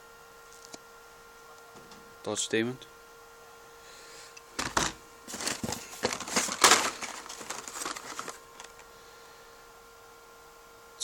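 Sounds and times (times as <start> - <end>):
plastic packaging crinkling: 4.6 - 8.9.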